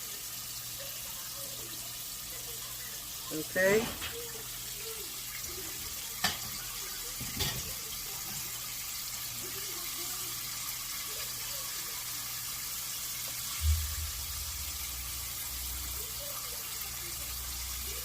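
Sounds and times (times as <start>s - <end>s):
chicken deep-frying in oil: 0.0s - 18.0s
low thump: 13.6s - 14.4s.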